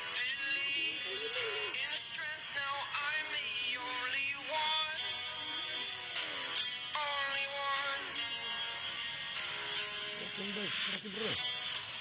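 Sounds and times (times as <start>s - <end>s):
processed singing voice: 0.0s - 6.2s, 6.9s - 8.5s
instrumental backing music: 0.0s - 12.0s.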